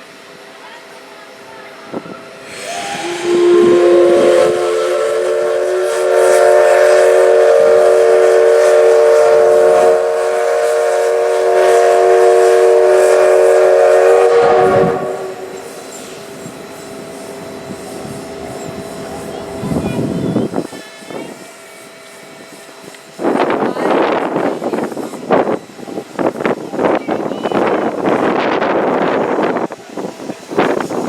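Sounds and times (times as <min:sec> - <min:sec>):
steam locomotive whistle: 0:02.4 - 0:25.7.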